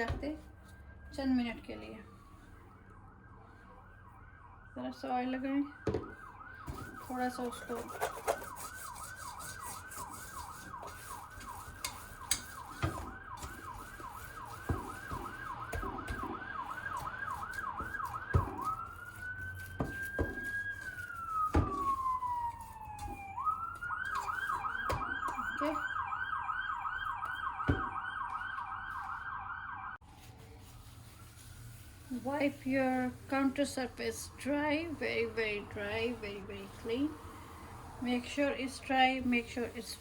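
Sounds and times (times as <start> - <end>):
emergency siren yelp and wail: 0.0 - 30.0.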